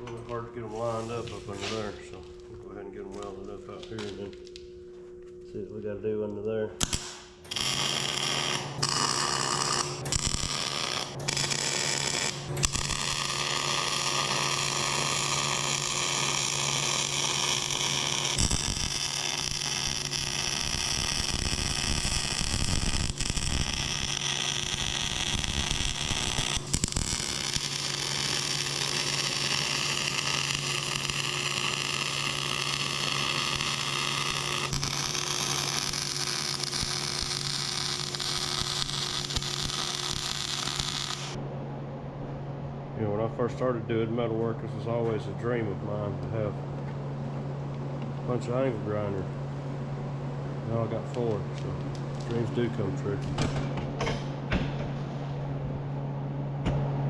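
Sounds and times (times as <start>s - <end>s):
steady electrical hum: 0.0s - 57.0s
crackling hissing welding arc: 6.8s - 41.4s.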